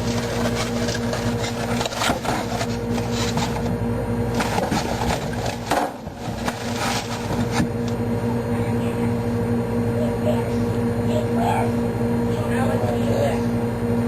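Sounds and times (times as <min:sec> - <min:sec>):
items knocking in cupboard: 0:00.0 - 0:03.7, 0:04.4 - 0:07.7
steady low hum: 0:00.0 - 0:14.0.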